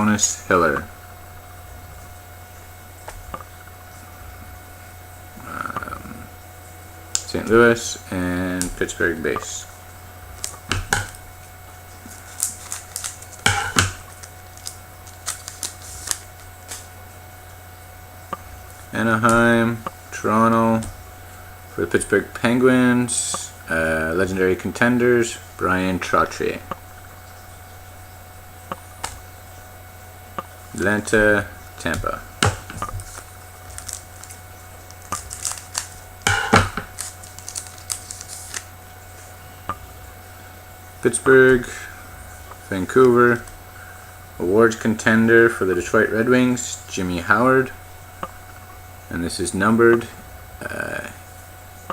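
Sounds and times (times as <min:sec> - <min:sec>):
steady low hum: 0:00.0 - 0:51.9
cards clicking and rustling: 0:07.2 - 0:09.7, 0:10.3 - 0:17.6, 0:30.4 - 0:39.9
wrappers crinkling: 0:07.2 - 0:19.0, 0:30.4 - 0:40.8.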